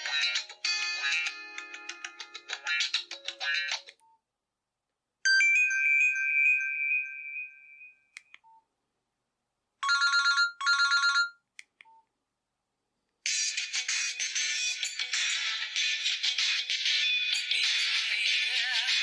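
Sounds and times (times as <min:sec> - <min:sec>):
chiming ringtone: 0:05.3 - 0:08.2, 0:09.8 - 0:11.4
rapid trilling ringtone: 0:09.8 - 0:11.4
phone beeps and clicks: 0:09.8 - 0:12.1.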